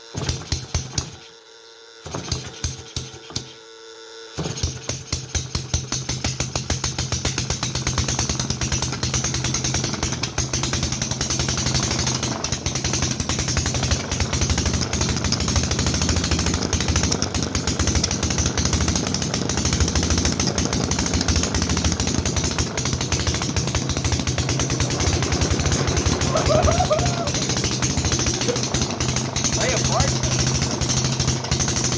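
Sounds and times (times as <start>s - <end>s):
two-stroke engine running: 4.4s - 31.9s.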